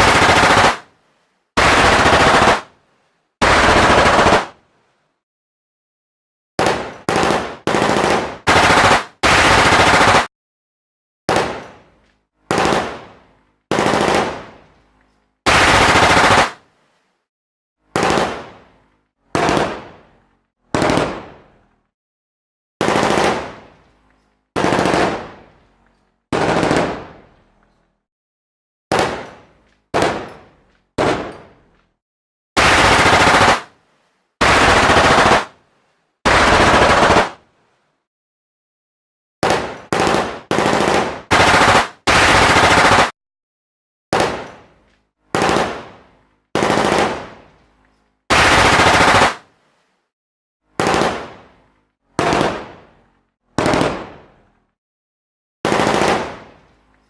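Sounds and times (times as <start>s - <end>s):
machine gun firing bursts: 0.0s - 0.9s, 1.6s - 2.7s, 3.4s - 4.6s, 6.6s - 10.3s, 12.5s - 14.6s, 15.5s - 16.6s, 17.9s - 18.5s, 19.3s - 19.9s, 20.7s - 21.3s, 22.8s - 23.7s, 24.6s - 25.4s, 26.3s - 27.1s, 29.9s - 30.3s, 32.6s - 33.7s, 34.4s - 35.6s, 36.3s - 37.4s, 39.4s - 43.1s, 45.3s - 46.0s, 46.6s - 47.4s, 48.3s - 49.4s, 50.8s - 51.4s, 52.2s - 52.7s, 53.6s - 54.2s, 55.6s - 56.5s.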